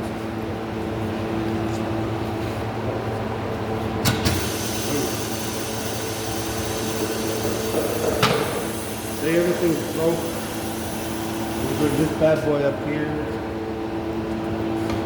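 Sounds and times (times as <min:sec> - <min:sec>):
machine mechanical hum: 0:00.0 - 0:15.0
air hissing: 0:04.2 - 0:12.3.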